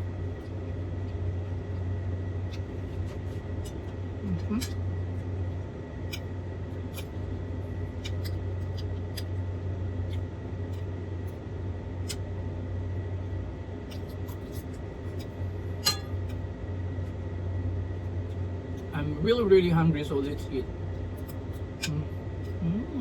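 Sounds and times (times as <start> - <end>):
steady low hum: 0.0 - 23.0
cutlery clinking on a plate: 15.8 - 16.2.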